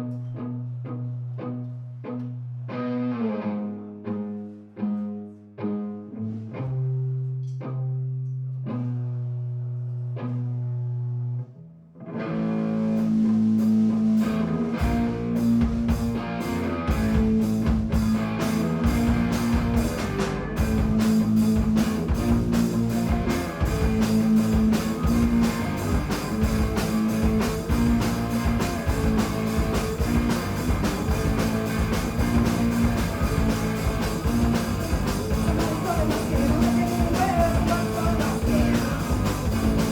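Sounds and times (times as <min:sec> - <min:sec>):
bass guitar: 0:00.0 - 0:39.9
electric guitar: 0:00.0 - 0:39.9
plucked notes on amplified guitar: 0:00.0 - 0:39.9
drums: 0:12.4 - 0:39.9.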